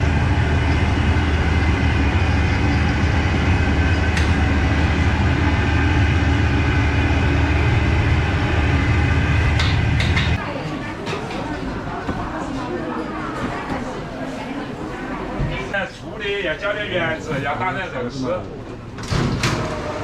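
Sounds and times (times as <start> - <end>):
hum of steady tones: 0.0 - 10.4
moving vehicle rumble: 0.0 - 10.4.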